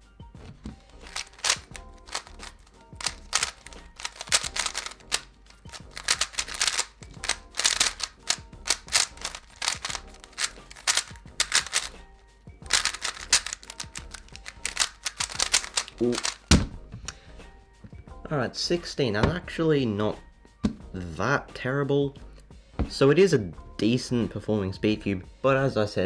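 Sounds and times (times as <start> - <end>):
puzzle cube plastic clicks: 0.4 - 12.0, 12.7 - 16.7.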